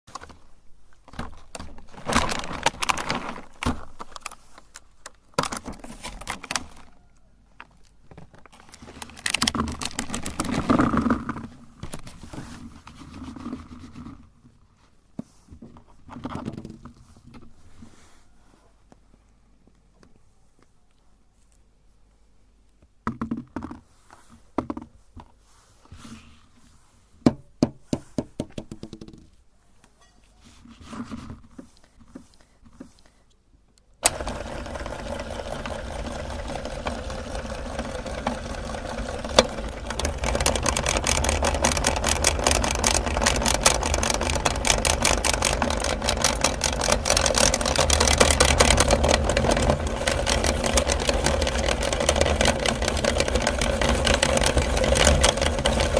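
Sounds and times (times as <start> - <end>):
rubber balls bouncing on hard surface: 27.3 - 29.4
electric meat grinder rattling: 34.0 - 55.9.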